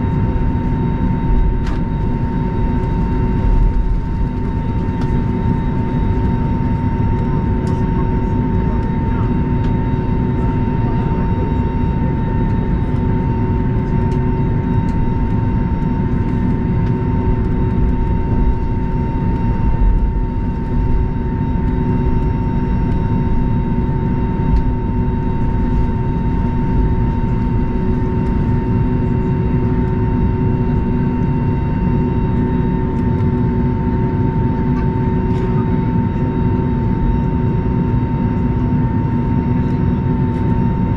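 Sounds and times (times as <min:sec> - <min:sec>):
aircraft cabin low rumble: 0:00.0 - 0:40.9
constant high whine: 0:00.0 - 0:40.9.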